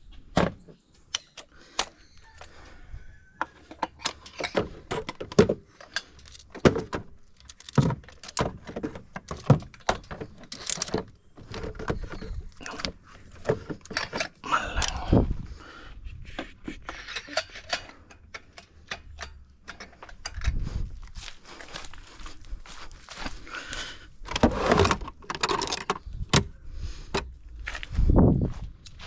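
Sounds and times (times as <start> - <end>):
metal tools clattering: 3.6 - 15.0, 16.8 - 20.6
bumps and rustles: 4.1 - 14.4.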